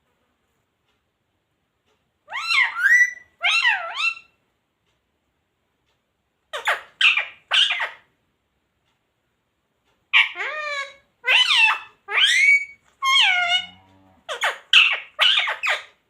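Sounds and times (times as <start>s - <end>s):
parrot calling: 2.2s - 4.4s, 6.5s - 8.1s, 10.1s - 16.0s.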